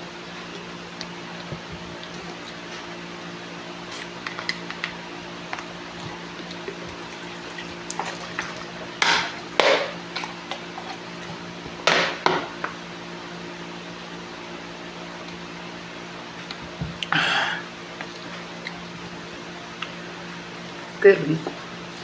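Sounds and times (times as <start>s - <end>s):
crackly eating sounds: 0.1s - 11.8s, 16.3s - 22.0s.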